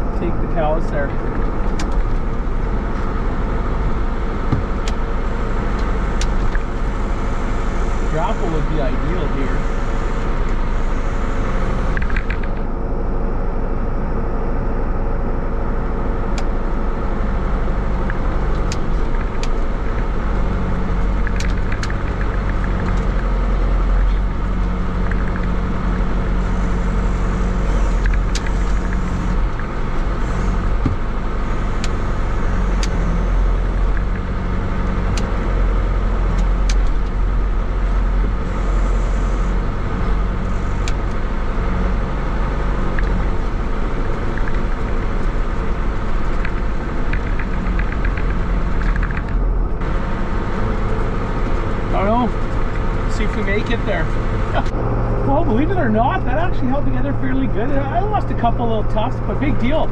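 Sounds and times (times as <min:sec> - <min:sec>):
tractor engine running: 0:00.0 - 0:59.9
sharp ticks and rattles: 0:09.7 - 0:12.7, 0:17.6 - 0:54.7.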